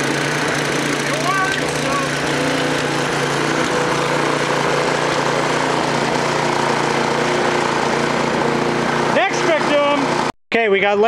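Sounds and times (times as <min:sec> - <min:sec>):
small engine idling: 0:00.0 - 0:10.3.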